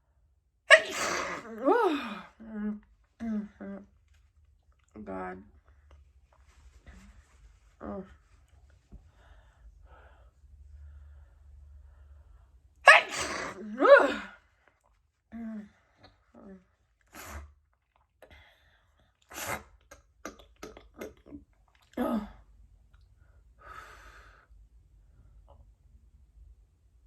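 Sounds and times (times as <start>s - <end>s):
woman sneezing: 0.7s - 2.2s, 12.9s - 14.4s.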